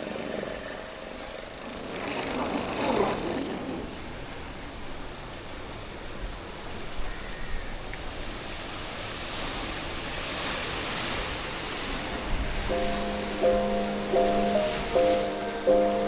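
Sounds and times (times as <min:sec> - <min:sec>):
sea surf washing on shore: 0:03.9 - 0:16.0.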